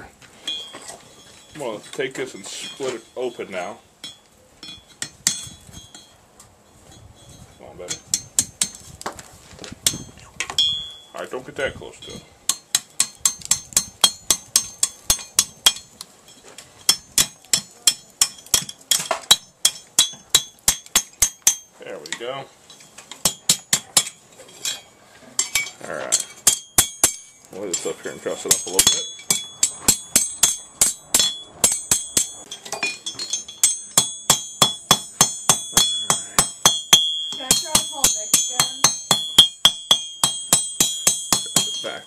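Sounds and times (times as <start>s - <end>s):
hammer ringing on anvil: 25.4s - 42.0s.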